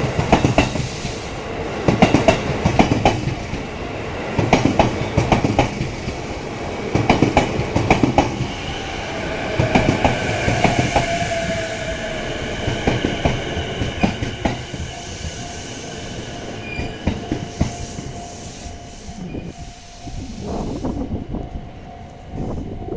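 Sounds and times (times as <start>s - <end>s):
train wheels clacking over rail joints: 0.0s - 8.7s, 9.4s - 18.8s.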